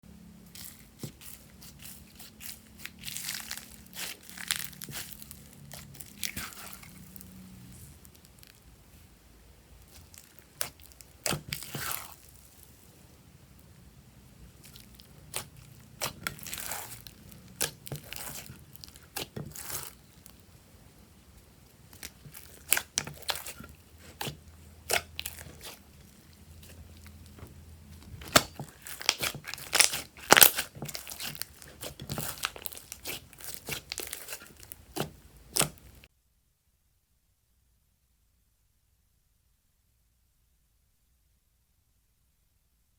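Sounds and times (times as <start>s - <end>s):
crunchy slime crackling: 0.4s - 8.8s, 9.8s - 12.9s, 14.5s - 20.6s, 21.3s - 36.1s.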